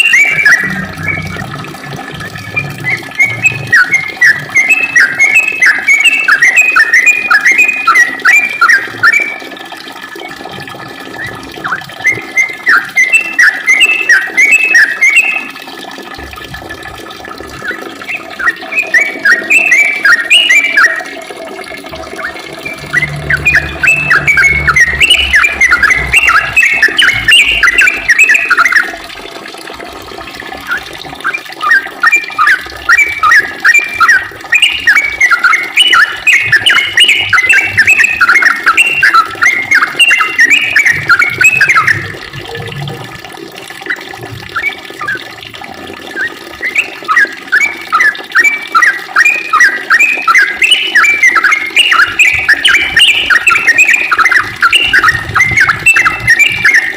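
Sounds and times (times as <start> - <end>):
bird singing chirping runs: 22.0 - 29.0, 49.5 - 56.9.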